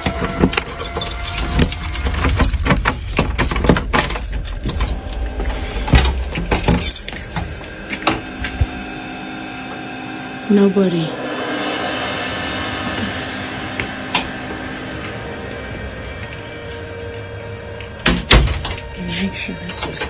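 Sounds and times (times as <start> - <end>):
door hardware clicking and rattling: 0.0 - 5.2, 18.0 - 19.0
keys jangling: 0.0 - 9.0.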